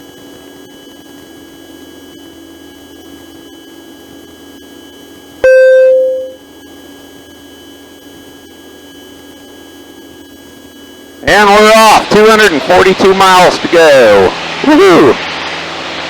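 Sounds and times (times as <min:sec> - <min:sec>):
aircraft engine drone: 0:05.4 - 0:06.4, 0:10.6 - 0:16.0
loud beep: 0:05.4 - 0:06.4.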